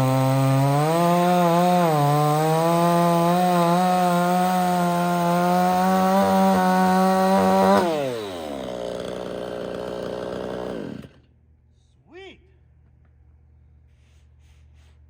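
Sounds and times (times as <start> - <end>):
chainsaw cutting log: 0.0 - 11.3.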